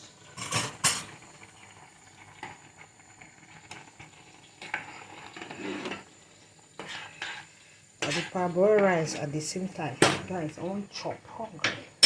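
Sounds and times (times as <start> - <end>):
wet stirring of rice in water: 6.8 - 9.2.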